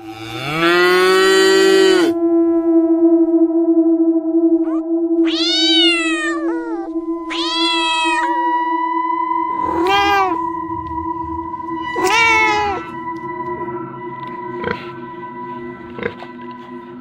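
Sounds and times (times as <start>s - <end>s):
held background music tone: 0.0s - 17.0s
cat meowing: 4.7s - 8.4s, 9.6s - 10.5s, 11.9s - 12.9s.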